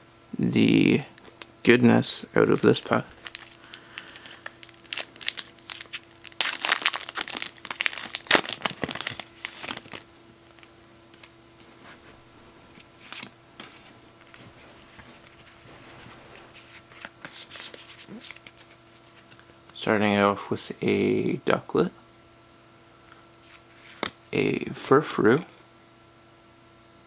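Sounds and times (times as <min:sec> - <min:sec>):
foil wrapper crinkling: 0:03.1 - 0:12.0, 0:12.6 - 0:15.8, 0:16.5 - 0:19.4.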